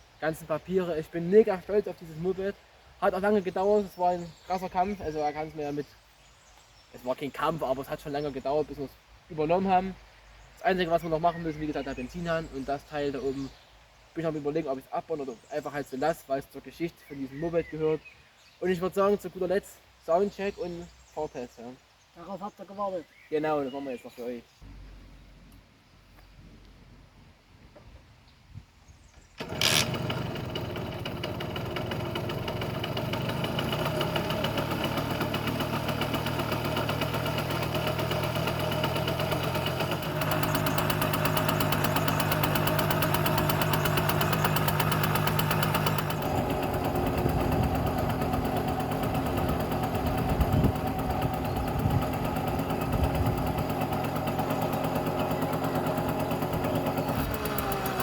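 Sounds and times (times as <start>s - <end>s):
moped engine starting and idling: 29.4s - 58.0s.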